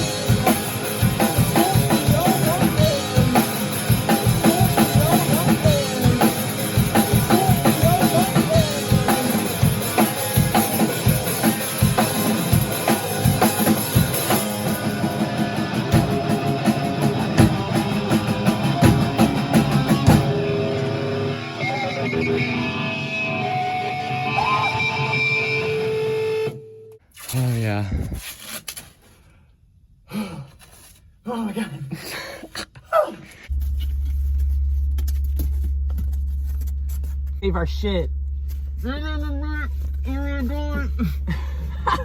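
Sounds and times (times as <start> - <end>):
drum kit: 0.0 - 26.5
electric guitar: 0.0 - 26.9.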